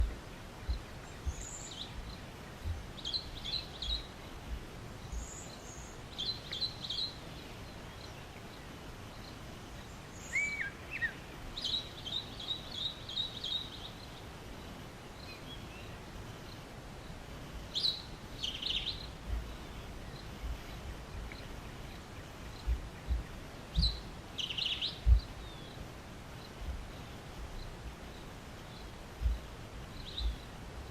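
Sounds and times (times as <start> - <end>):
outdoor background noise: 0.0 - 30.9
songbirds chirping: 0.0 - 30.9
thumps on microphone: 22.6 - 24.0, 29.2 - 29.5.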